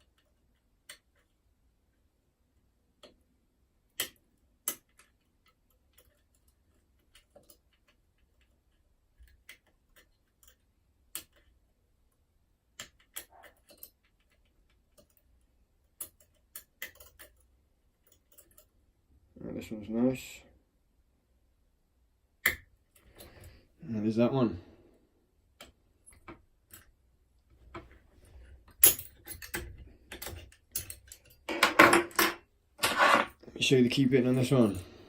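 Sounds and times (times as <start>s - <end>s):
metallic clicks of lock picking: 16.0s - 17.4s.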